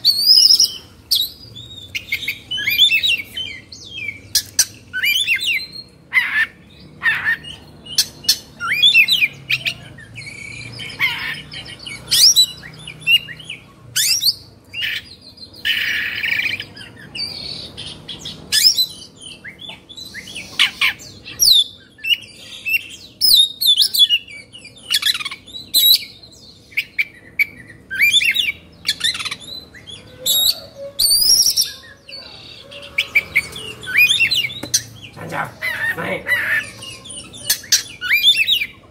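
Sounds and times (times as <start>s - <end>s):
bird harsh rasping call: 1.9s - 24.3s, 26.8s - 38.9s.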